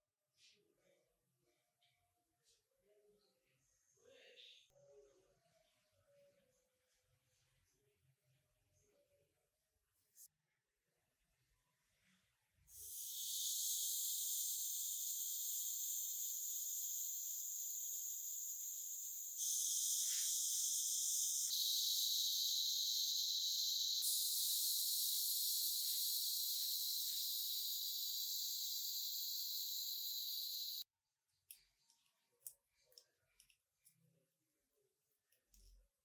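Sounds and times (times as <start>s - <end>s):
pressurised spray hissing: 18.6s - 30.8s.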